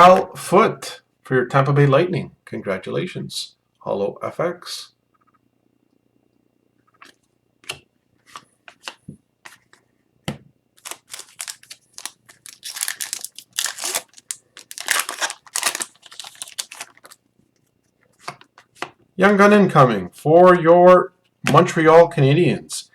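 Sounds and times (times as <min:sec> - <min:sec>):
card pack wrapper tearing and crinkling: 0:10.8 - 0:17.2.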